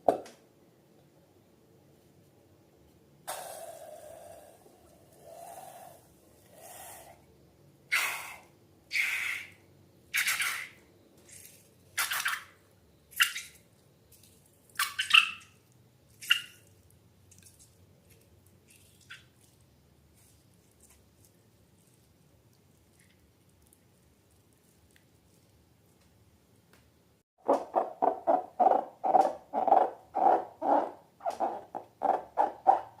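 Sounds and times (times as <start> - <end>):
wet slime squelching: 13.1 - 26.0.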